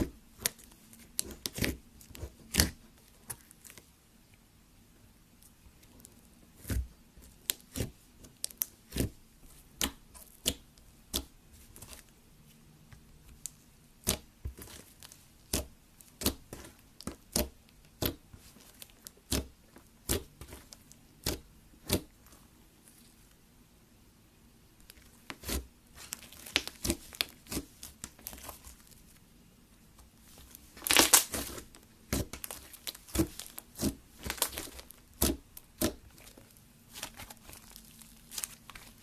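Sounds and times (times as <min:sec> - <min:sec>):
slime clicking and popping: 0:30.8 - 0:36.2.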